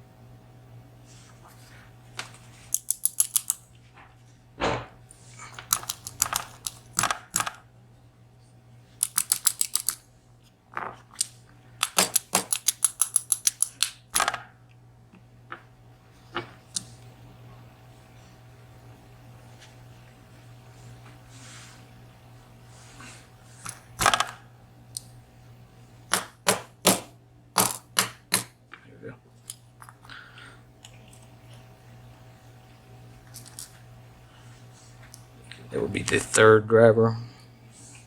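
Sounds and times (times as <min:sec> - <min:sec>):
faint steady hum: 0:00.0 - 0:38.0
small sharp metallic clicks: 0:02.7 - 0:03.6, 0:09.0 - 0:10.0, 0:11.2 - 0:14.3.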